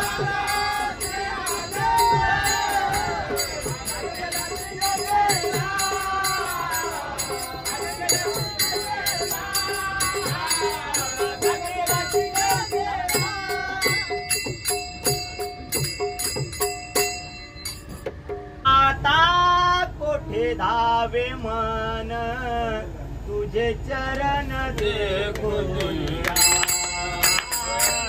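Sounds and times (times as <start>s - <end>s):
group singing devotional song: 0.0s - 14.6s
hand cymbals clinking: 0.0s - 18.1s, 26.4s - 28.0s.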